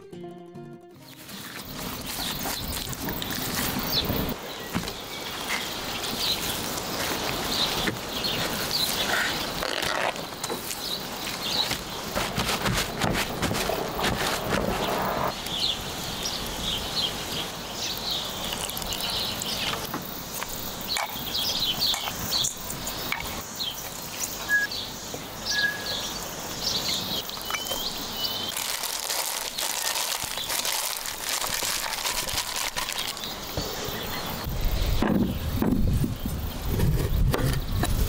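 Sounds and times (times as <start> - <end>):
small birds chirping: 1.0 - 38.0
high steady hiss: 1.2 - 36.7
clicks and crackles: 28.5 - 33.3.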